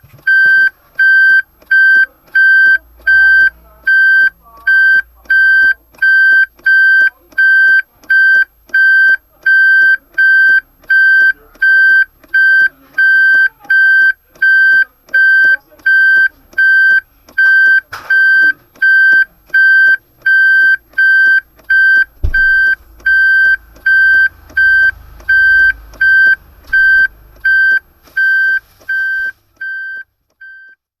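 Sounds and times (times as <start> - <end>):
car reverse warning beeps: 0.2 - 30.8
dull thump: 22.0 - 22.8.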